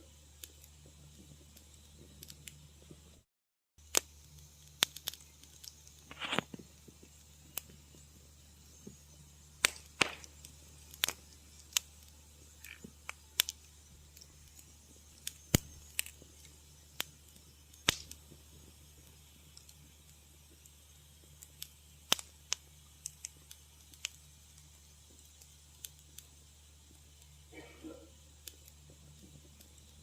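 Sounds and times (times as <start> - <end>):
wood fire crackling: 0.0 - 3.2, 3.8 - 30.0
faint low hum: 4.1 - 30.0.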